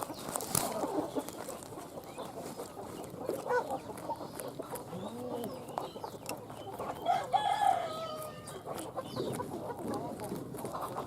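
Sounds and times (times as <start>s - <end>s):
chickens clucking: 0.0s - 11.0s
rooster crowing: 7.0s - 8.5s.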